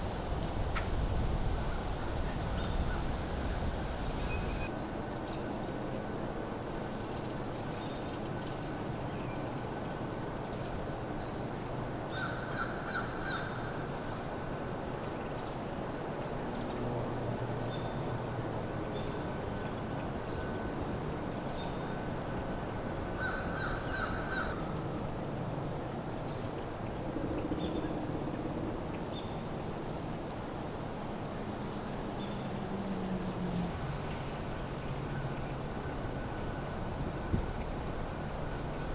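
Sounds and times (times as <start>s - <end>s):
crow cawing: 23.2s - 24.6s.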